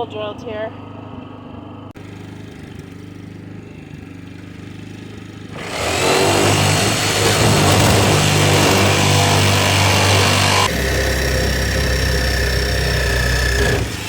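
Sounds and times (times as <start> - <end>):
tractor engine revving: 4.7 - 14.0.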